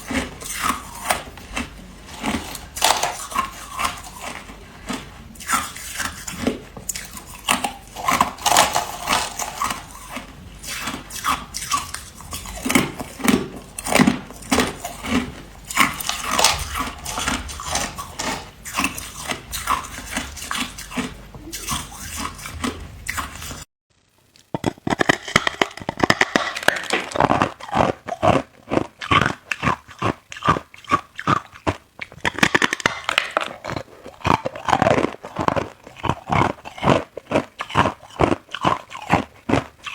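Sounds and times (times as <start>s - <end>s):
person crunching ice: 0.0s - 6.4s, 7.0s - 12.2s, 24.3s - 39.9s.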